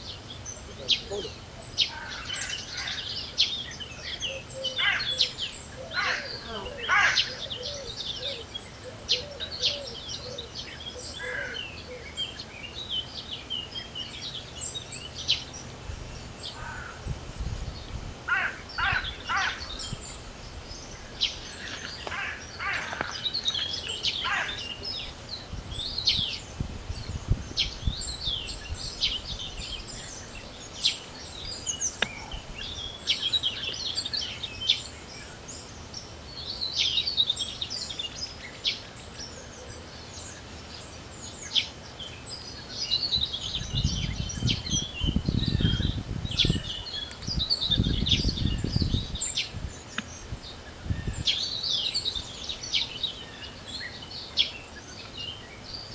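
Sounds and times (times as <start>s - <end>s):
birds chirping and calling: 0.0s - 55.9s
wind rumbling on microphone: 15.2s - 33.4s, 43.0s - 53.2s.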